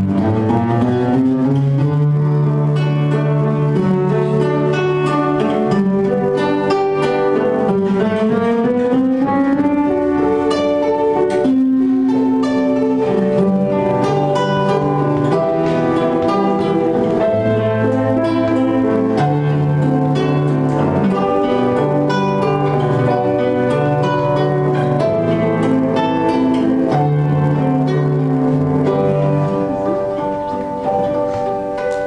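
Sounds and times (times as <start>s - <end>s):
string music with held notes: 0.0s - 32.0s.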